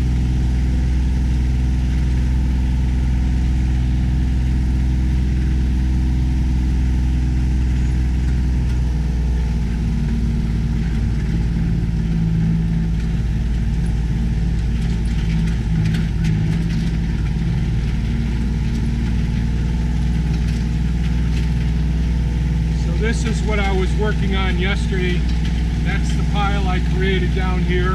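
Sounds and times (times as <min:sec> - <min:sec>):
vehicle engine running: 0:00.0 - 0:27.9.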